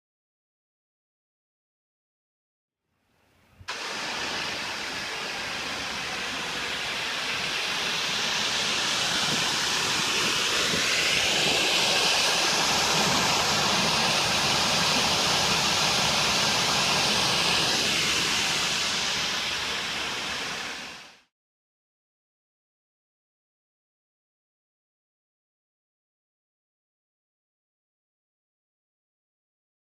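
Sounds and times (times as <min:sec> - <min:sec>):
pressure washer spraying fabric: 0:03.7 - 0:21.2.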